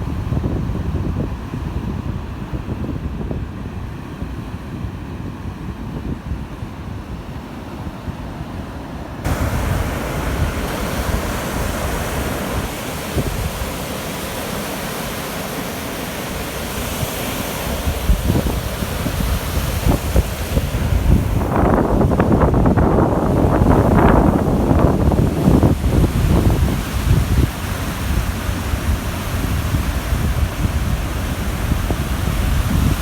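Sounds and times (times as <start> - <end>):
surf breaking on a beach: 0.0 - 33.0
wind buffeting the microphone: 0.0 - 33.0.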